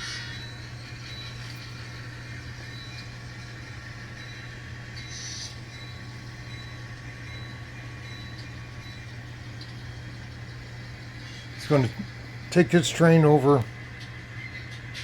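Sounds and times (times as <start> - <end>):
model locomotive engine hum: 0.0 - 15.0.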